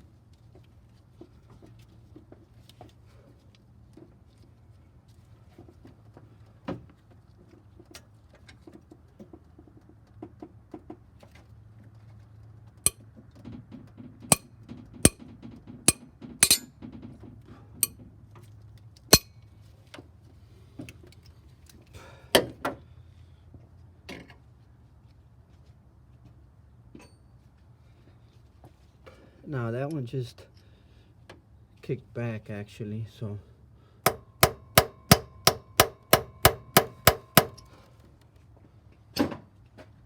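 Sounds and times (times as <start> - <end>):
metal tools clinking on metal: 15.9 - 16.7, 19.1 - 19.4.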